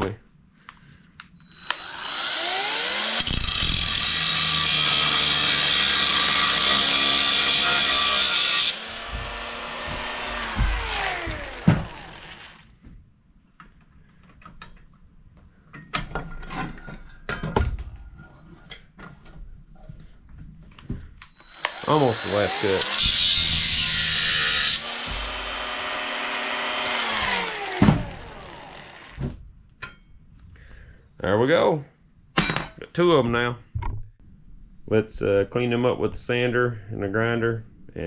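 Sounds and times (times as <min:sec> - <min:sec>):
power tool cutting steel: 0:01.5 - 0:12.6, 0:21.4 - 0:29.2
metal knocks and clatters: 0:15.8 - 0:19.9, 0:25.0 - 0:25.9.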